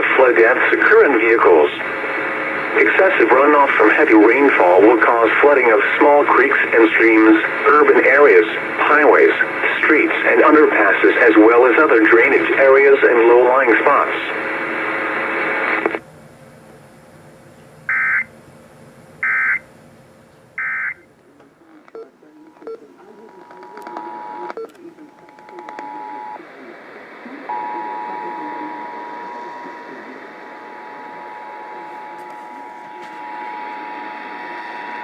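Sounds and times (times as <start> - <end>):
clicks: 21.4 - 26.2
two-tone attention signal: 27.5 - 35.0.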